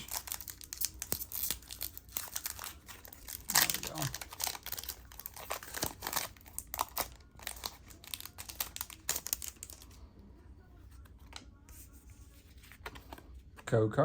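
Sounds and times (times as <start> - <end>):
foil wrapper crinkling: 0.0 - 9.9.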